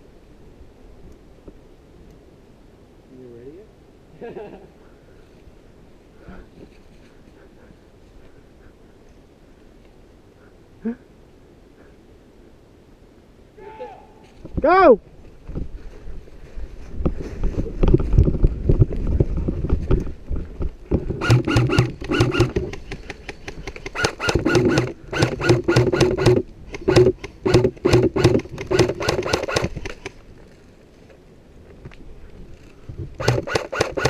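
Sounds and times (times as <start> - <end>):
low rumbling movement noise: 14.3 - 23.0
airsoft guns firing full auto: 21.2 - 30.1, 33.2 - 34.0.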